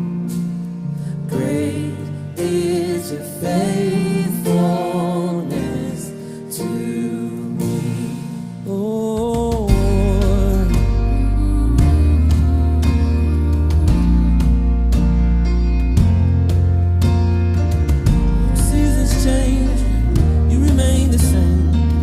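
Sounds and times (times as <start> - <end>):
soulful singing over chords: 0.0 - 16.3, 18.1 - 22.0
deep bass: 9.2 - 22.0.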